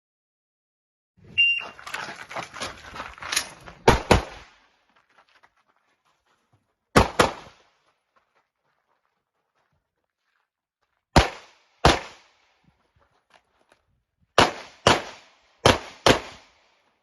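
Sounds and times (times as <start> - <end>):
pistol shots: 3.8 - 4.6, 6.9 - 7.6, 11.2 - 12.4, 14.4 - 16.8.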